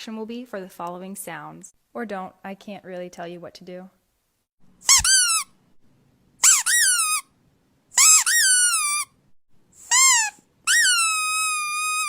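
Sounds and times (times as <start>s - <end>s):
squeaky toy squeaking: 4.8s - 5.6s, 6.4s - 7.3s, 7.9s - 9.2s, 9.8s - 12.0s.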